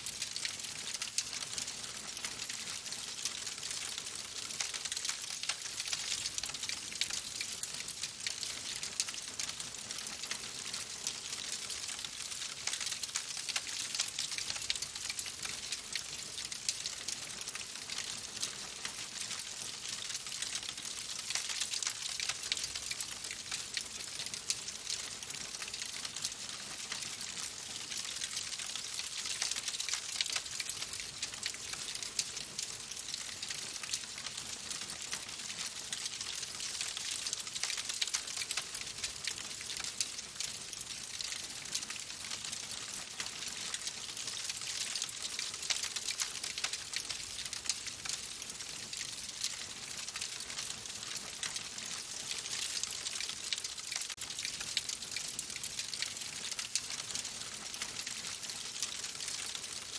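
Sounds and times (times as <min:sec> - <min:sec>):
wood fire crackling and popping: 0:42.8 - 0:48.2.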